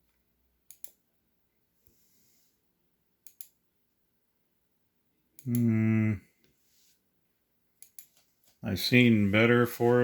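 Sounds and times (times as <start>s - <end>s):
computer mouse clicks: 0.0s - 1.0s, 3.2s - 3.6s, 7.8s - 8.3s
soft breath: 1.8s - 2.7s.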